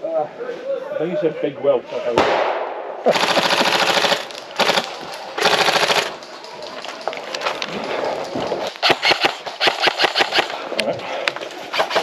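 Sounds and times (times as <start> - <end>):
airsoft rifle rapid fire: 3.1 - 6.2, 8.8 - 10.5, 11.7 - 12.0.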